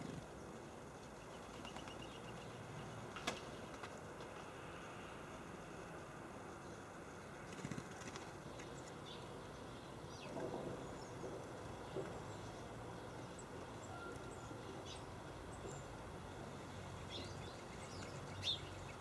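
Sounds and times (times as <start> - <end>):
small birds chirping: 16.6 - 19.0.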